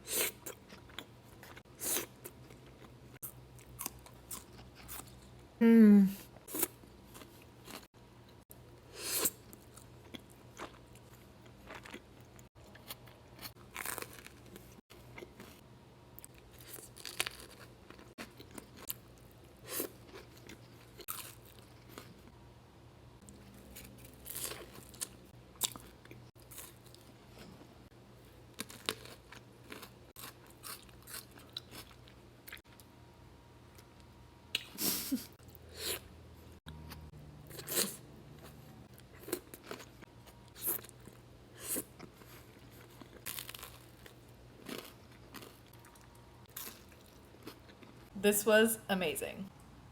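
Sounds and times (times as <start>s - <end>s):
crunchy food being chewed: 0.1s - 5.4s, 9.1s - 15.6s, 16.2s - 22.3s, 23.2s - 27.7s, 28.3s - 32.9s, 36.6s - 48.1s.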